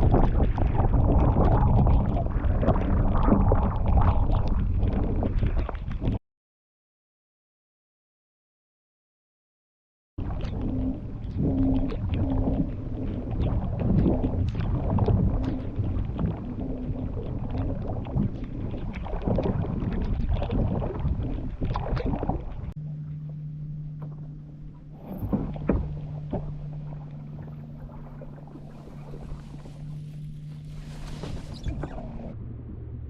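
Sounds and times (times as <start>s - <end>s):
water splashes: 0.0s - 6.2s, 10.2s - 22.8s, 24.0s - 32.4s
steady low hum: 22.4s - 33.0s
kayak hull knocking in water: 25.0s - 27.5s.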